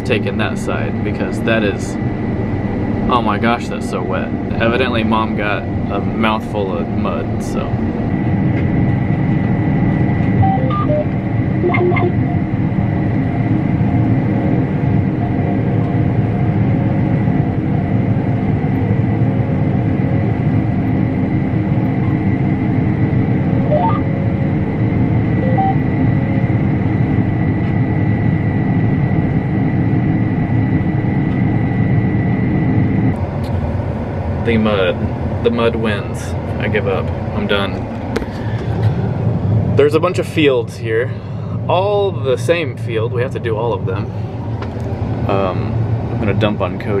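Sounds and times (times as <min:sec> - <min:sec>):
combine harvester drone: 0:00.0 - 0:47.0
high machine whine: 0:00.0 - 0:47.0
short faint beeps: 0:10.4 - 0:12.2.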